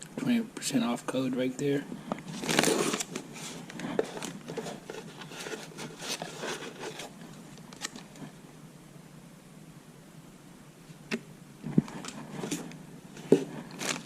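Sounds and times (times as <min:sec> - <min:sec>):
paper and packaging rustling: 0:02.2 - 0:08.3, 0:11.7 - 0:14.0.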